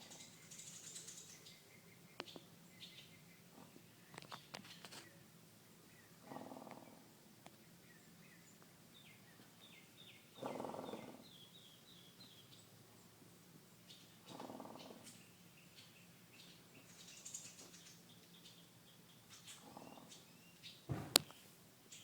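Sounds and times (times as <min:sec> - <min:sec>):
small bird chirping: 0:00.0 - 0:05.2, 0:13.8 - 0:22.0
horse snoring: 0:06.2 - 0:07.0.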